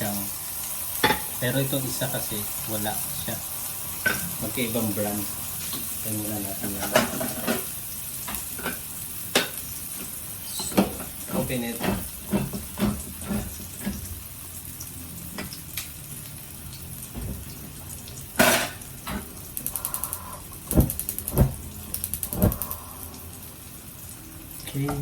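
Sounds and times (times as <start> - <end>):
heavy thuds: 20.7 - 21.7, 22.3 - 22.8.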